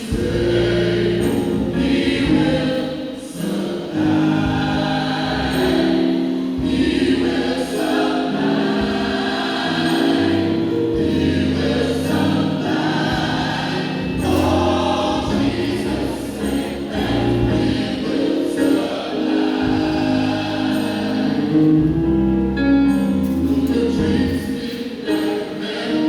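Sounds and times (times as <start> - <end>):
choir singing: 0.0 - 26.0
instrumental backing: 0.0 - 26.0.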